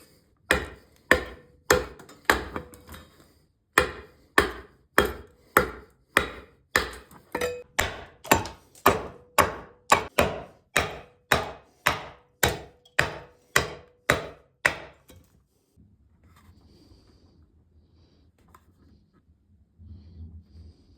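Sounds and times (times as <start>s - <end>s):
hand tool striking wooden barrel: 0.5s - 3.0s, 3.8s - 15.3s.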